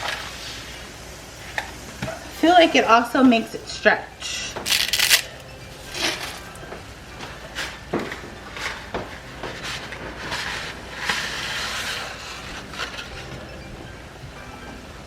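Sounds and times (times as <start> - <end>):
rustling crackling: 0.0 - 15.0
dry spaghetti snapping: 4.5 - 6.6.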